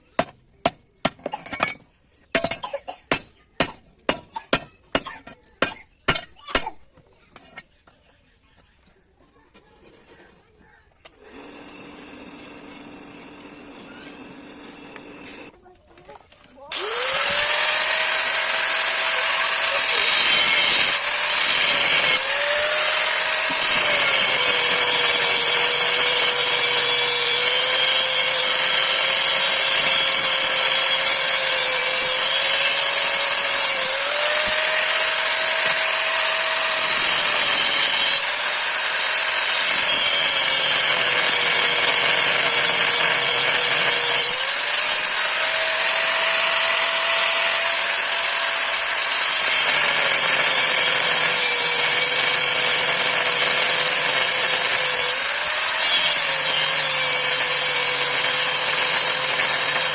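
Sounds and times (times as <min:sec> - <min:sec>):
electric power tool motor: 0:11.1 - 0:15.5, 0:16.7 - 0:59.9.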